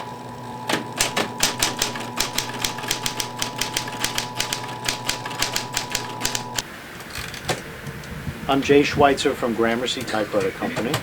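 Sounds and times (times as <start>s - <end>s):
electrical hum: 0.0s - 11.0s
typewriter key strikes: 1.0s - 6.6s.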